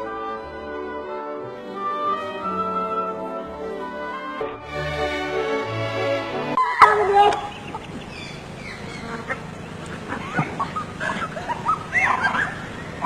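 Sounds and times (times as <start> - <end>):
squeaky animal calls: 6.6 - 13.0.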